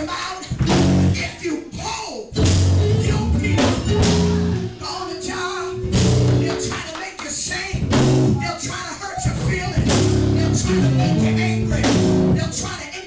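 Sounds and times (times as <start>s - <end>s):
drum hits: 0.5s - 1.2s, 2.4s - 4.5s, 7.4s - 8.4s, 11.8s - 12.4s
live band playing loud music: 0.5s - 1.3s, 2.4s - 12.7s
pulsing bass line: 0.6s - 1.2s, 2.4s - 4.8s, 5.8s - 6.6s, 7.8s - 8.4s, 9.3s - 12.5s.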